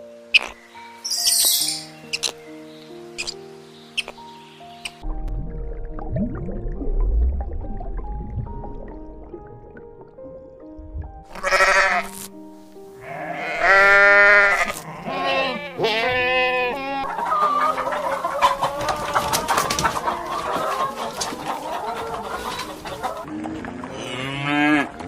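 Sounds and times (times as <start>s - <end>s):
background music: 0.0s - 25.0s
farm animal calls: 0.3s - 2.5s, 11.3s - 12.3s, 13.0s - 23.3s.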